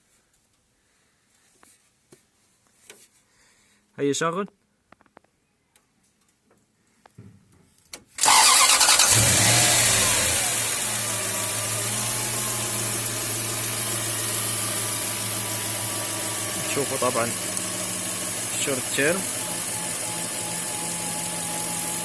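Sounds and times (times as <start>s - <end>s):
truck engine starting and idling: 8.2s - 22.0s.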